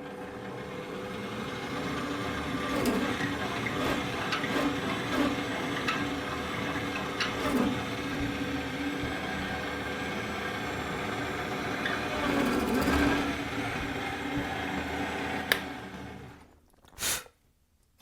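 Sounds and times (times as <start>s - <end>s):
drill boring into wood: 0.4s - 16.4s
switch click: 15.5s - 15.7s.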